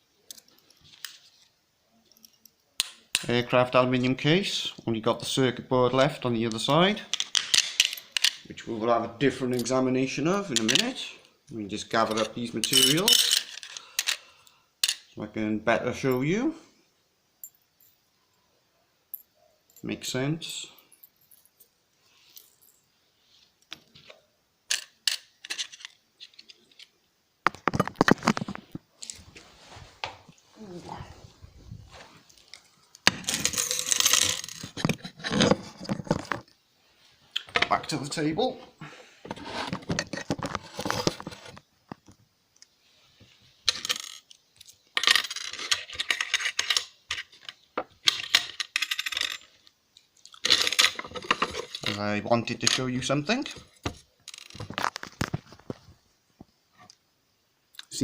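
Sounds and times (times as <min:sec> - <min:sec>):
metal parts clattering: 0:07.1 - 0:08.5, 0:12.0 - 0:15.1, 0:24.7 - 0:26.8, 0:33.1 - 0:36.4, 0:43.7 - 0:44.4, 0:45.0 - 0:49.7, 0:50.3 - 0:53.6, 0:54.3 - 0:55.1.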